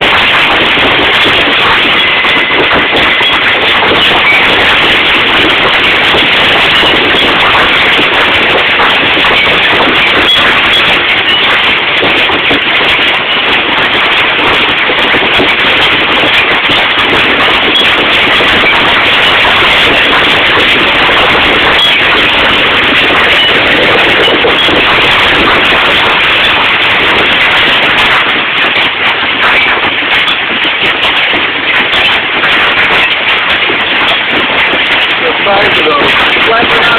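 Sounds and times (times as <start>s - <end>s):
hailstones clattering: 0.0s - 36.9s.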